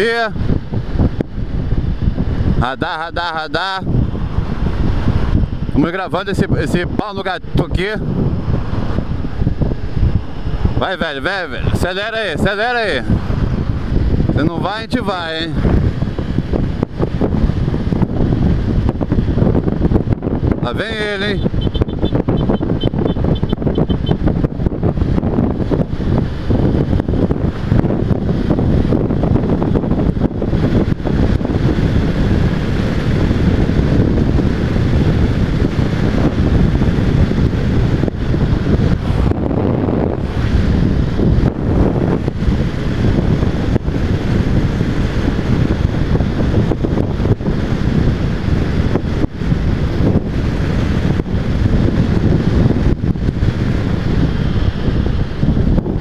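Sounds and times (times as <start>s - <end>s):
road noise: 0.0s - 56.0s
wind buffeting microphone: 0.0s - 56.0s
motorcycle engine: 21.4s - 29.1s.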